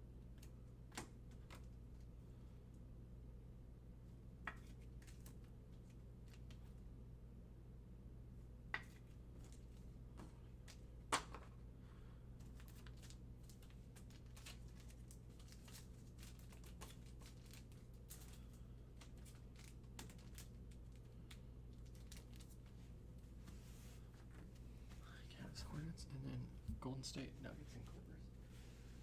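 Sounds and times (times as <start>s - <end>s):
steady low hum: 0.0s - 29.0s
trading cards rustling and clicking: 12.4s - 22.8s.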